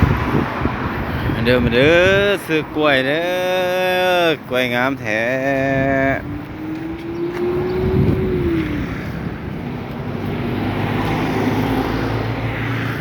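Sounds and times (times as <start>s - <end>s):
road noise: 0.0s - 13.0s
vehicle engine running: 3.0s - 12.5s.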